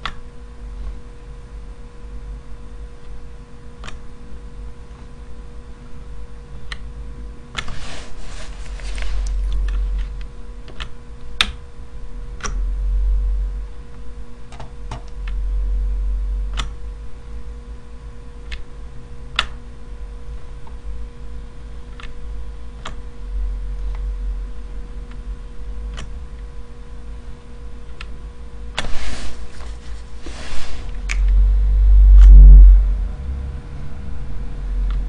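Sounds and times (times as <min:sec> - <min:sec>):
electrical hum and rumble: 0:00.0 - 0:35.0
computer mouse clicks: 0:03.8 - 0:04.0.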